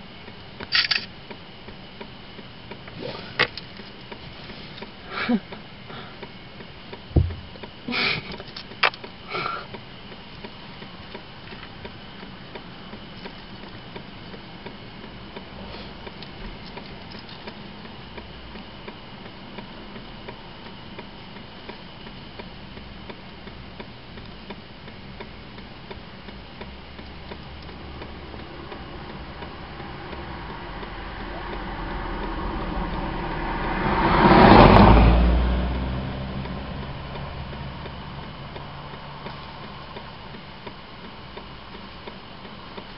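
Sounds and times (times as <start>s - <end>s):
low background hum: 0.0s - 32.9s
sharp clicks: 0.6s - 1.1s
car passing on road: 27.7s - 40.4s.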